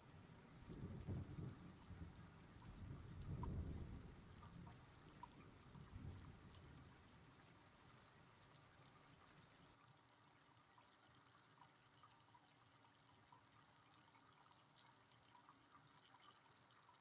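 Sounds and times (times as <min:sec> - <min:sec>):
faint steady rain: 0:00.0 - 0:17.0
small drips: 0:00.0 - 0:17.0.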